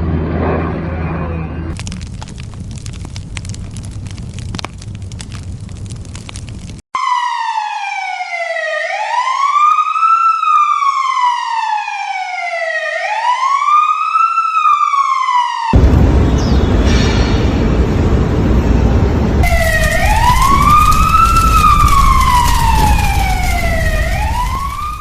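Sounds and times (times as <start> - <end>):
emergency siren wailing: 7.0 - 15.8, 19.4 - 25.0
loud rushing rumble: 15.8 - 25.0.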